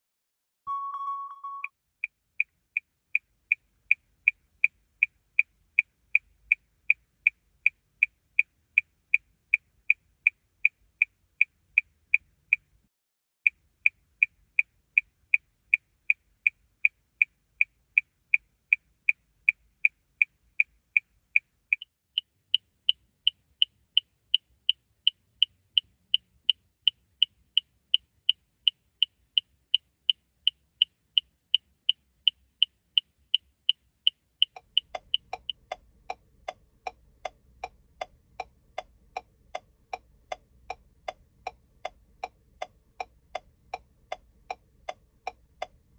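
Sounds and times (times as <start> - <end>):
short steady beep: 0.7 - 1.7
car turn signal clicking: 31.8 - 36.2.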